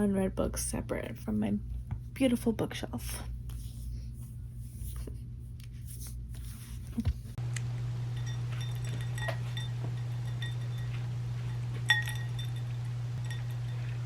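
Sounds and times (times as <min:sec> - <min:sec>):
steady low hum: 0:00.0 - 0:14.0
light high-pitched clinks: 0:08.1 - 0:14.0.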